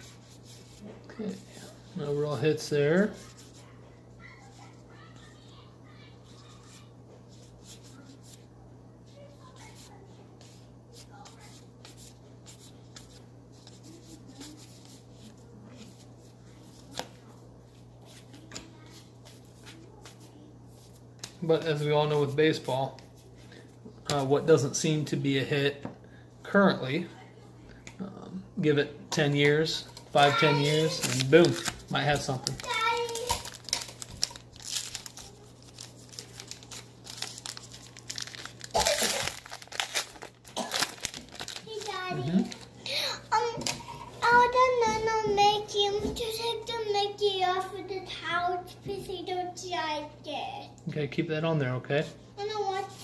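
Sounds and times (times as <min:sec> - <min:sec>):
cards rustling and clicking: 0:29.4 - 0:42.7
wrapper crinkling and tearing: 0:30.2 - 0:43.0.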